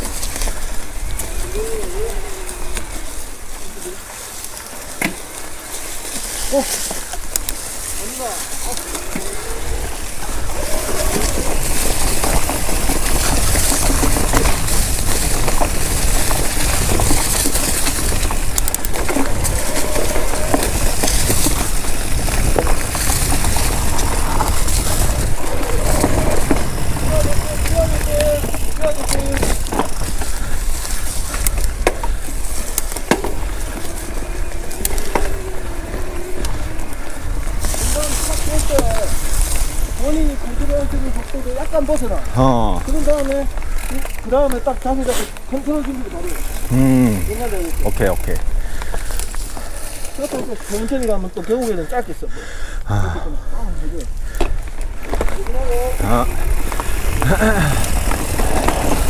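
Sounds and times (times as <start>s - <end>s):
bike rattling over bumps: 0.0s - 59.0s
bike tyres rolling on dirt trail: 0.0s - 59.0s
wind rumble on microphone: 8.5s - 44.2s.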